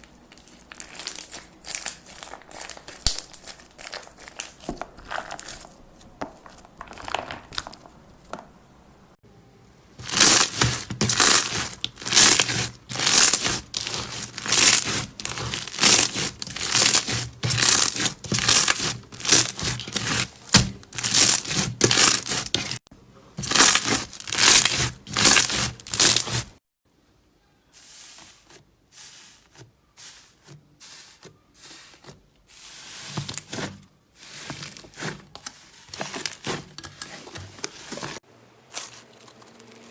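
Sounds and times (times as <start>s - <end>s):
crunchy slime crackling: 0.0s - 5.8s, 10.0s - 22.8s, 23.4s - 26.6s.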